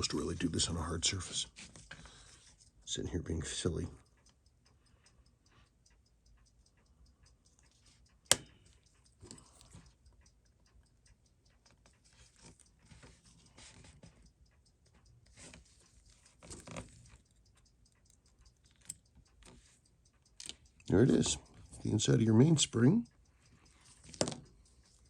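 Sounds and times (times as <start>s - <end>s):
small metal clicks and scrapes: 0.0s - 3.0s, 11.4s - 25.0s
faint rapid ticking: 0.0s - 25.0s.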